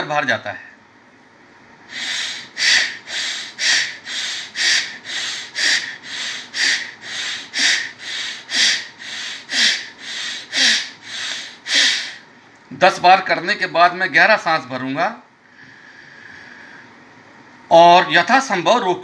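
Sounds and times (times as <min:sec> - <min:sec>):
man breathing forcefully: 0:01.9 - 0:12.3.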